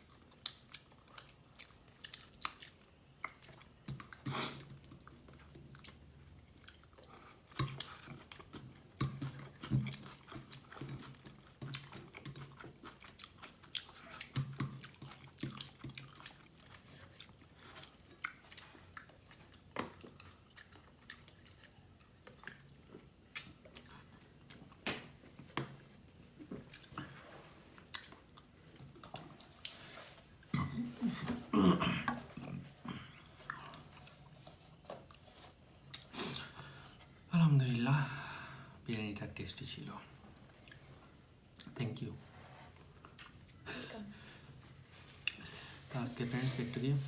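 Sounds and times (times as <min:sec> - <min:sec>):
chewing and mouth smacks: 0:00.0 - 0:30.6, 0:33.2 - 0:36.2, 0:40.3 - 0:41.8, 0:42.8 - 0:43.6, 0:45.0 - 0:45.5.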